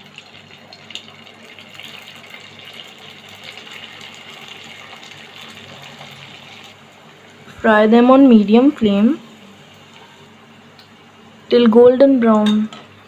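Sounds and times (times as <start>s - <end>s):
food sizzling in hot oil: 0.0s - 7.0s.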